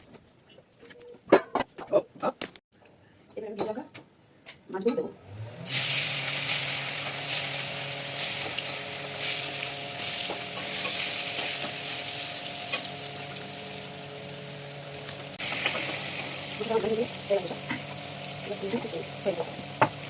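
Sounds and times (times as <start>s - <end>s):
fish sizzling in hot oil: 5.7s - 20.0s.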